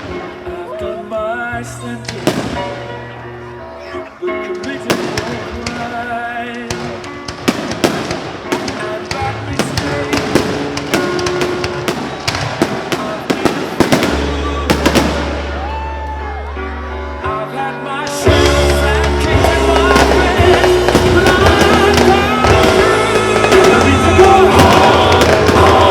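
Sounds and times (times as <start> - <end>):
music: 0.0 - 25.9
fireworks bangs and crackles: 2.0 - 2.9, 4.5 - 15.8, 18.1 - 25.9.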